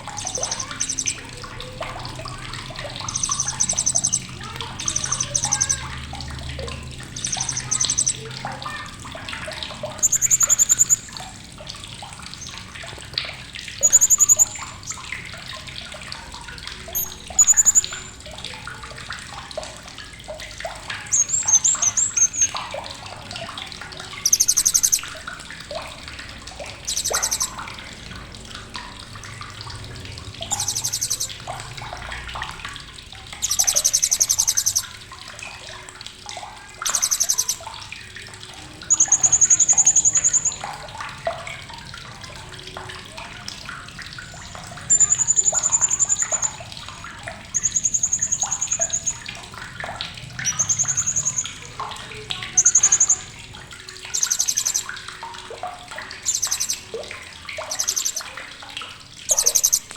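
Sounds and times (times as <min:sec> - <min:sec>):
parrot trilled chirps: 0:00.2 - 0:01.2, 0:03.1 - 0:05.9, 0:07.2 - 0:08.8, 0:10.0 - 0:11.2, 0:13.8 - 0:14.8, 0:16.9 - 0:18.2, 0:24.2 - 0:25.0, 0:26.9 - 0:27.5, 0:30.5 - 0:31.4, 0:33.4 - 0:34.8, 0:36.8 - 0:37.6, 0:44.9 - 0:46.6, 0:54.1 - 0:54.9, 0:56.3 - 0:56.9, 0:57.6 - 0:58.2, 0:59.3 - 0:59.9.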